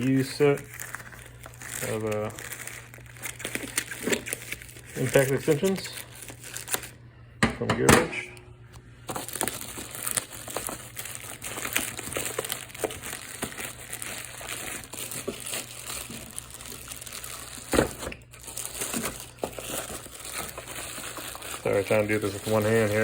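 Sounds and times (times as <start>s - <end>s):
packaging crinkling: 0.0s - 7.0s, 9.1s - 23.0s.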